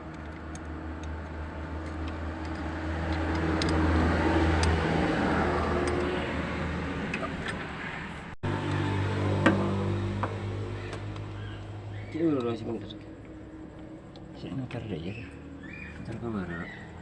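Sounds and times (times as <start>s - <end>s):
steady low hum: 0.0s - 17.0s
vehicle engine passing by: 0.8s - 13.1s.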